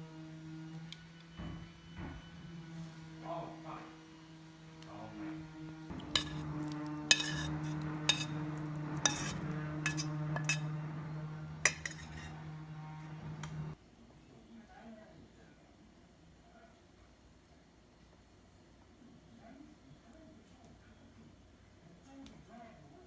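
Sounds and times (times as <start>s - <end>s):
utensils clinking against dishes: 5.9s - 10.9s, 11.6s - 12.5s.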